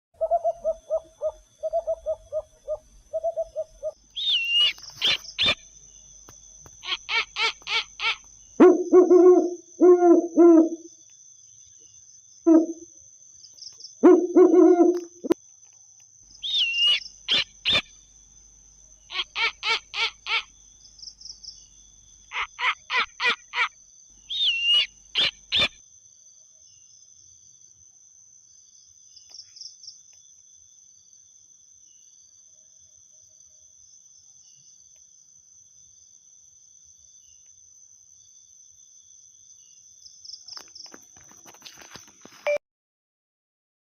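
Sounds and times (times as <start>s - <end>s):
owl hooting: 0.2s - 5.6s, 6.8s - 10.9s, 12.5s - 12.8s, 14.0s - 15.4s, 16.4s - 17.9s, 19.1s - 20.5s, 24.3s - 25.8s.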